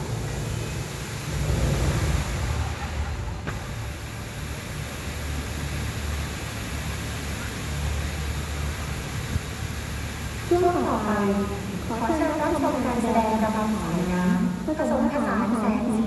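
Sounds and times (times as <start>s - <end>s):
low rumble: 0.0s - 5.0s
even hiss: 0.0s - 16.0s.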